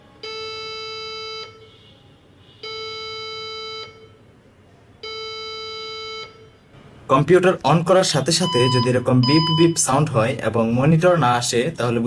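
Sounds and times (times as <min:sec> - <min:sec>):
long steady computer beeps: 0:00.2 - 0:01.9, 0:02.6 - 0:04.3, 0:05.0 - 0:06.7, 0:08.4 - 0:10.0.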